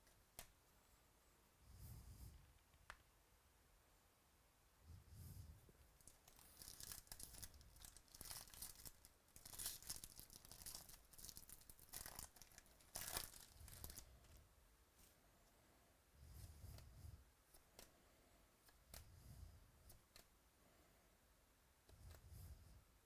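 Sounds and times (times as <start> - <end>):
wrappers tearing and crinkling: 6.1 - 14.1.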